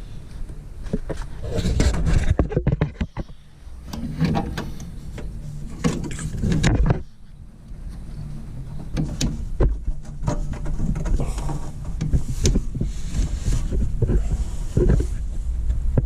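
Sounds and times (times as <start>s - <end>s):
rumbly handling noise: 0.0s - 16.0s
knocks and clunks: 0.8s - 7.2s, 7.8s - 16.0s.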